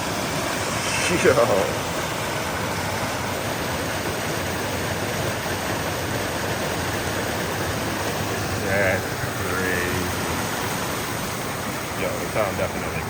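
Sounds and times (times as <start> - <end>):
flooded creek rushing: 0.0 - 13.0.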